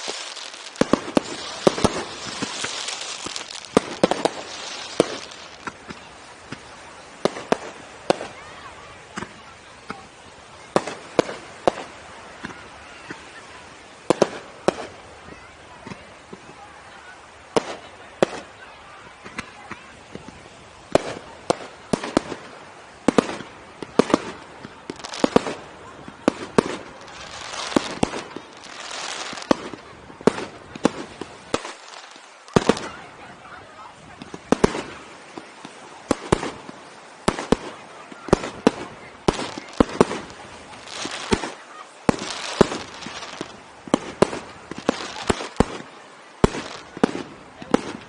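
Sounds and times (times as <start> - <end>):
crackling of bursting shells: 0.0 - 5.8
fireworks bursting: 0.0 - 48.0.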